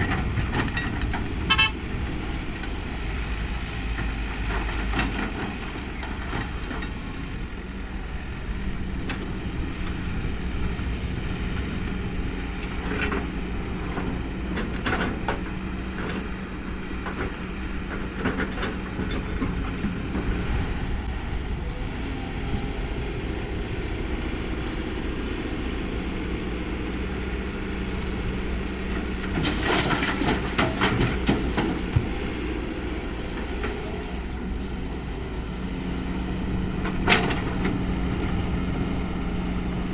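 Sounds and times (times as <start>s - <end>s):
metallic clanks and knocks: 0.0s - 1.8s
excavator diesel engine: 0.0s - 39.9s.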